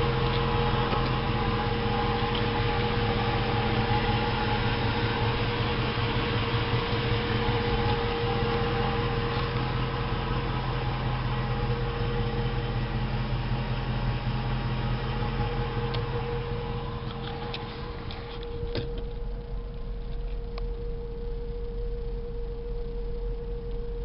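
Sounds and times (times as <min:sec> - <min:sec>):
car engine idling: 0:00.0 - 0:24.0
steady whine: 0:00.0 - 0:24.0.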